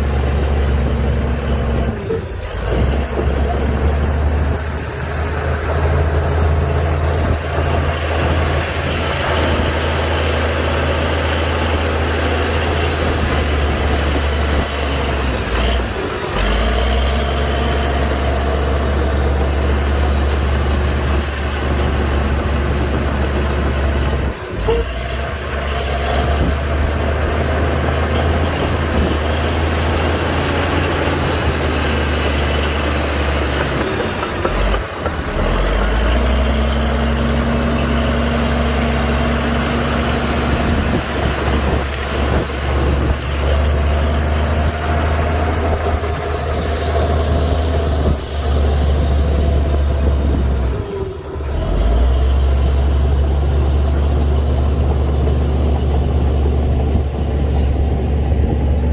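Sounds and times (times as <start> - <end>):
heavy diesel engine running: 0.0 - 58.9.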